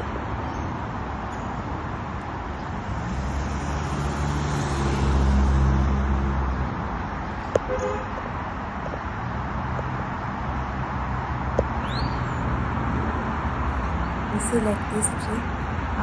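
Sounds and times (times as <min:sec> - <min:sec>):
traffic noise: 0:00.0 - 0:16.0
vehicle passing: 0:03.0 - 0:06.5.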